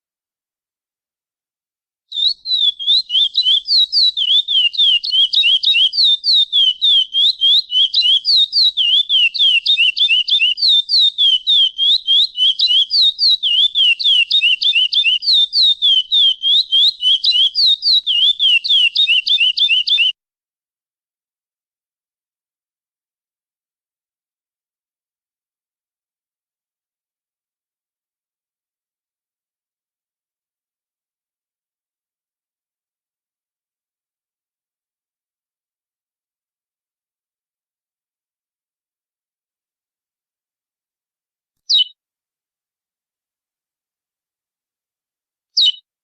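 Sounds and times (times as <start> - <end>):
finch whistling calls: 2.1 - 20.1, 41.7 - 41.9, 45.6 - 45.8.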